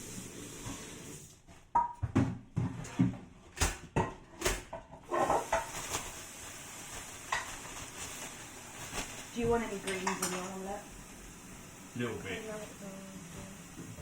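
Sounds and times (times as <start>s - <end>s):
cookware knocking and clattering: 1.7s - 5.8s, 9.8s - 10.6s.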